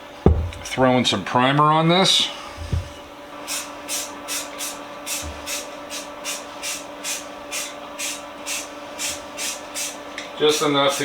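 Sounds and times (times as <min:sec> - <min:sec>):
aerosol spray bursts: 0:03.5 - 0:11.0.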